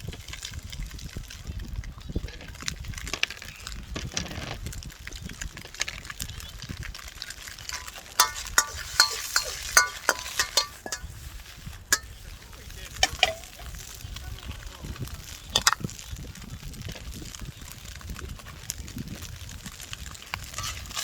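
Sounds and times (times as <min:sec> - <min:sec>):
metal spatula scraping rice in wok: 0:07.2 - 0:12.3, 0:20.4 - 0:21.0
spatula clanking on wok rim: 0:07.3 - 0:11.2, 0:11.9 - 0:12.1, 0:13.0 - 0:13.5, 0:20.5 - 0:21.0.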